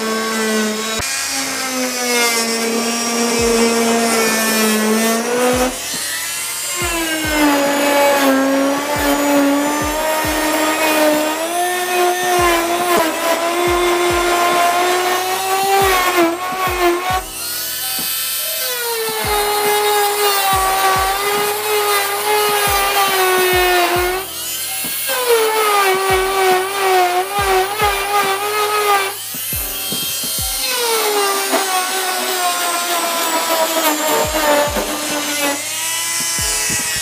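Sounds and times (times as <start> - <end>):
oscillating multi-tool motor whine: 0.0 - 37.0.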